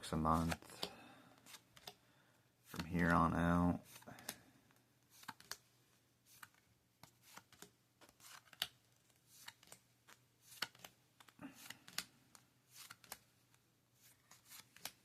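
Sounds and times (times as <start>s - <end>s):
cards flicked by hand: 5.1s - 5.6s.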